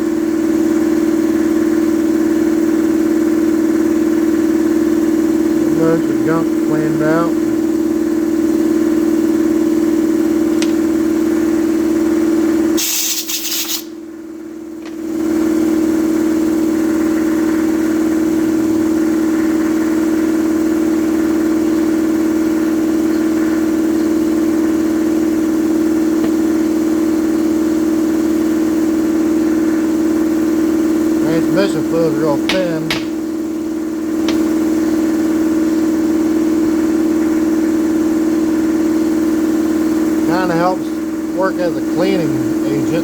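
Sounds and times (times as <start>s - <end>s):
air compressor humming: 0.0s - 43.0s
air hiss: 12.8s - 14.0s.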